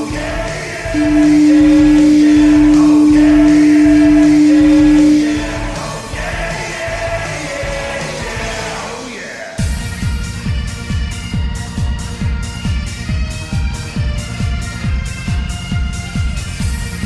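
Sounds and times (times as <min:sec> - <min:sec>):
hockey goal horn blast: 0:00.0 - 0:05.8
group singing song: 0:00.0 - 0:09.6.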